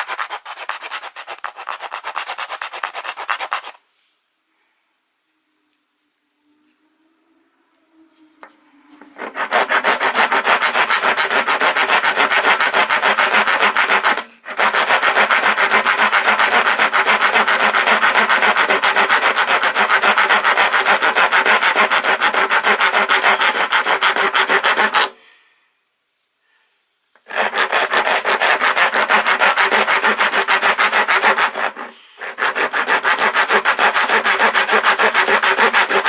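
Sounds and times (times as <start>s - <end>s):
rasp filing wood: 0.0s - 3.8s, 9.2s - 25.2s, 27.2s - 36.0s.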